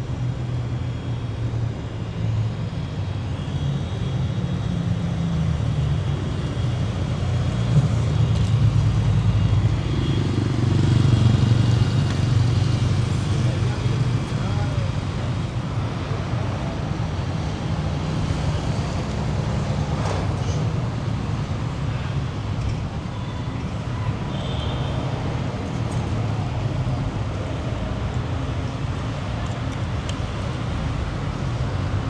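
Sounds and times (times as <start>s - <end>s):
city street traffic: 0.0s - 32.0s.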